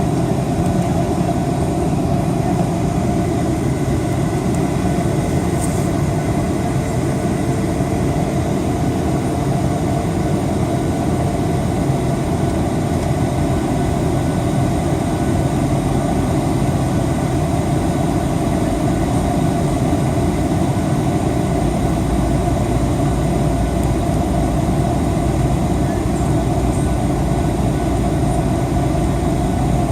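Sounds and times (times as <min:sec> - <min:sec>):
jet airliner cabin noise: 0:00.0 - 0:29.9.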